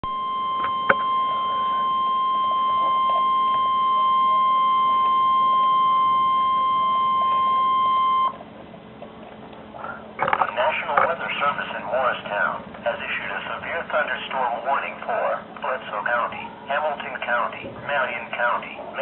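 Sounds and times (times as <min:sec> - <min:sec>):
steady alert beep: 0:00.0 - 0:08.4
faint radio hiss: 0:09.8 - 0:19.0.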